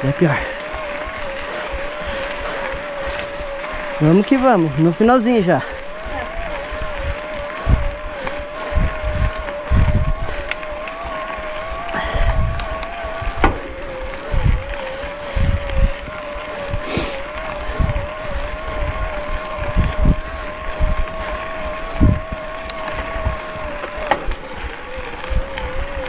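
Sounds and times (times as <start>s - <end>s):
bike knocking over trail: 0.0s - 25.8s
electric bike motor whining: 0.0s - 26.0s
wind gusting on microphone: 0.0s - 26.0s.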